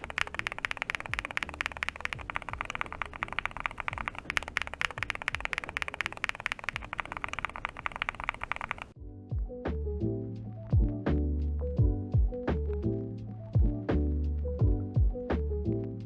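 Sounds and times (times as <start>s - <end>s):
mechanical keyboard typing: 0.0s - 9.0s.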